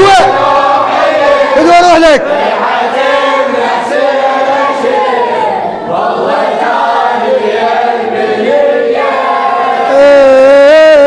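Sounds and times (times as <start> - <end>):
men chanting in unison: 0.0 - 11.0
man reciting long ornamented note: 7.0 - 11.0.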